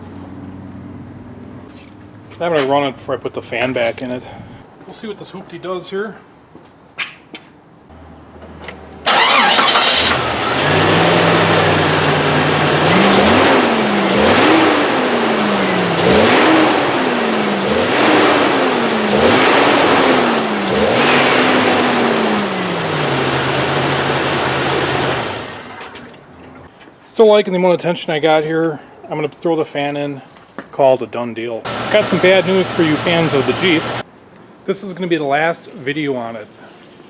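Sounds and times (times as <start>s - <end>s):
car engine starting and revving: 9.0s - 26.2s, 31.7s - 34.0s.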